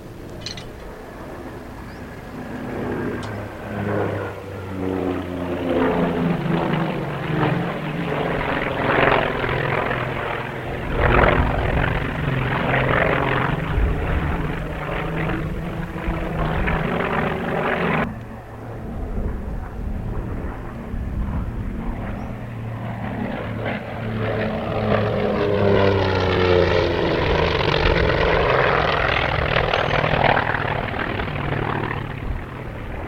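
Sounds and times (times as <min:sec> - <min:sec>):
propeller airplane flying by: 0:00.0 - 0:33.0.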